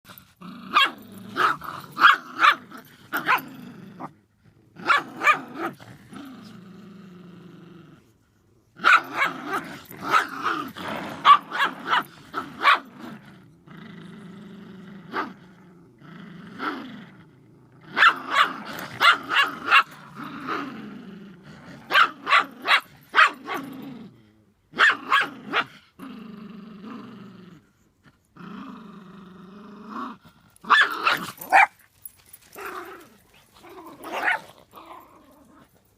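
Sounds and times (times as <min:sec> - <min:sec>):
dog growling: 0:00.1 - 0:08.2, 0:08.8 - 0:31.7, 0:32.5 - 0:35.9
dog barking: 0:00.7 - 0:02.6, 0:03.2 - 0:03.5, 0:04.8 - 0:05.8, 0:08.8 - 0:10.4, 0:11.2 - 0:12.9, 0:18.0 - 0:20.0, 0:21.9 - 0:23.6, 0:24.8 - 0:25.7, 0:30.7 - 0:31.7, 0:34.1 - 0:34.5.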